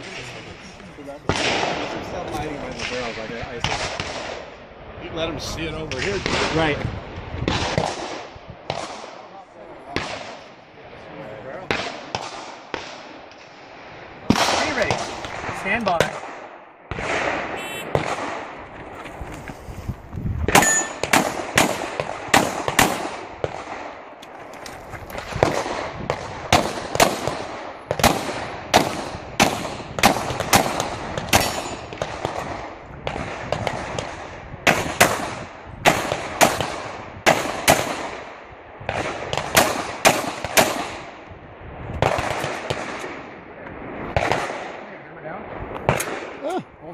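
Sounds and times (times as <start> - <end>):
pistol shots: 14.3 - 18.6, 20.5 - 24.0, 25.2 - 38.3, 38.9 - 41.1, 42.0 - 43.3, 44.1 - 44.8
brief metallic ring: 20.6 - 21.0.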